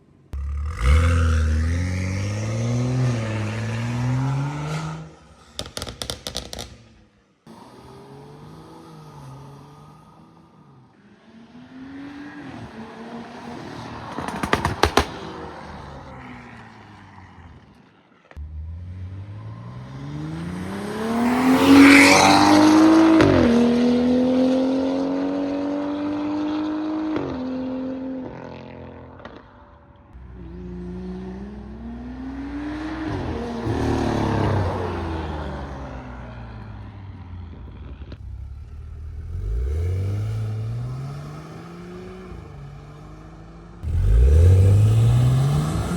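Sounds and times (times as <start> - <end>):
car engine revving: 0.4 - 13.0, 18.4 - 45.9
exhaust pops crackling: 5.4 - 7.1, 14.1 - 15.2, 37.5 - 41.0.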